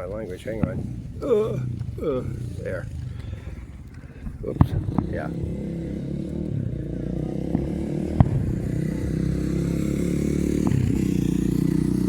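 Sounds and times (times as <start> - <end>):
short sharp pops: 0.0 - 5.2, 10.5 - 11.1
vehicle engine running: 0.0 - 12.0.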